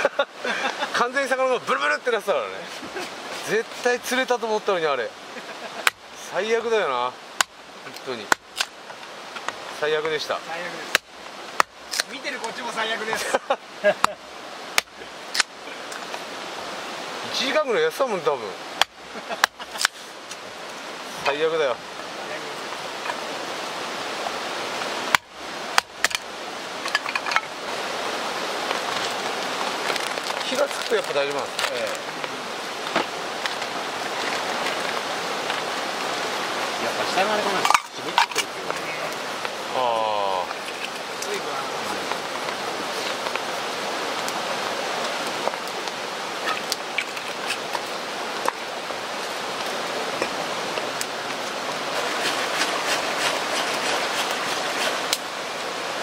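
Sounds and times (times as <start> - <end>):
rain falling: 0.0 - 56.0
sharp ticks and pops: 5.8 - 6.1, 7.4 - 10.2, 10.9 - 12.6, 14.0 - 16.3, 18.8 - 20.4, 24.8 - 27.5, 28.7 - 35.7, 45.0 - 48.6, 49.6 - 55.3.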